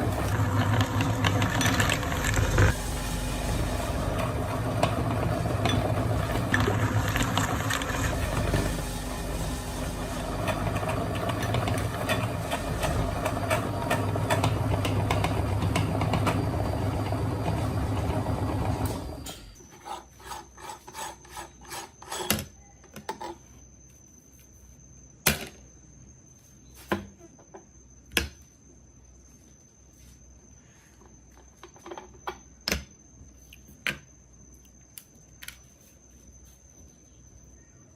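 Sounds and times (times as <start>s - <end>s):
meat grinder motor hum: 0.0s - 19.3s.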